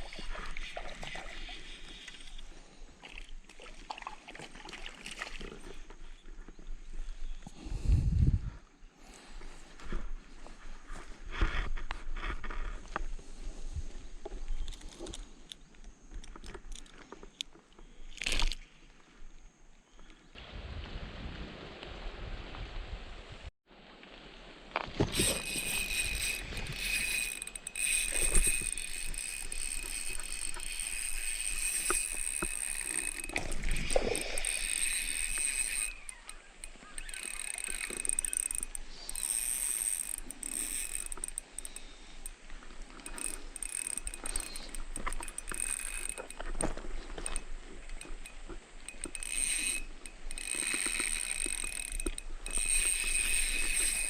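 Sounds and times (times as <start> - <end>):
fishing reel whirring and clicking: 25.0 - 54.0.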